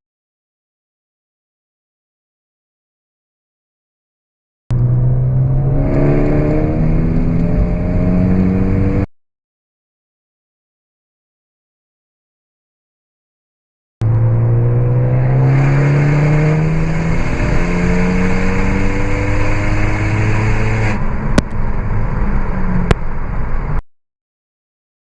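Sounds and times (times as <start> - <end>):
car engine accelerating: 4.7 - 9.1, 14.0 - 23.8.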